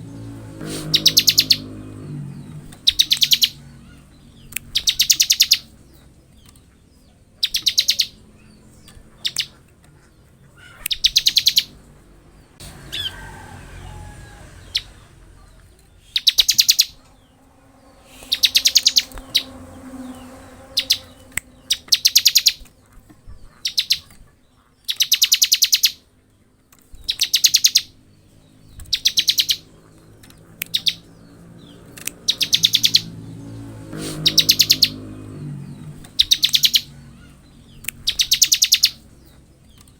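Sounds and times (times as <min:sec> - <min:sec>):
bird singing rapid high notes: 0:00.1 - 0:06.5, 0:07.4 - 0:09.6, 0:10.6 - 0:11.8, 0:16.0 - 0:22.8, 0:23.5 - 0:24.1, 0:27.0 - 0:39.3.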